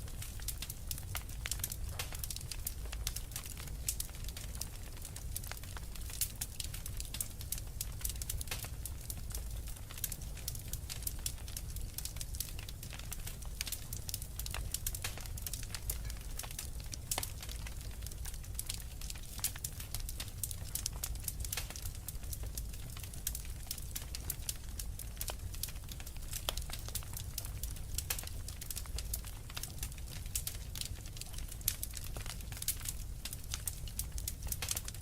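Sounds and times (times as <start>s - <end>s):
wood fire crackling: 0.0s - 35.0s.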